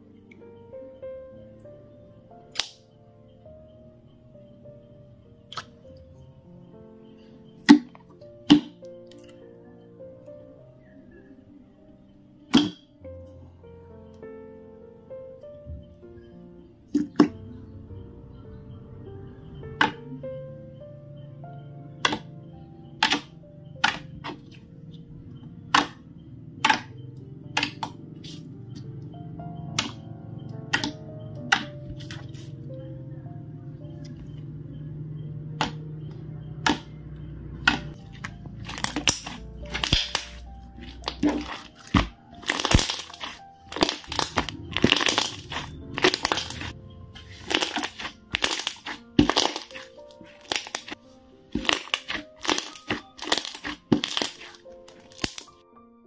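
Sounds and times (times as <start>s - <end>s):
soft background music: 0.0s - 56.0s
slime squelching by hand: 36.6s - 55.5s.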